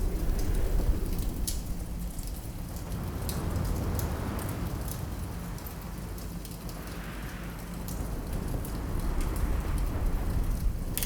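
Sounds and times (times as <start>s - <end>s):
wood fire crackling: 0.0s - 3.0s.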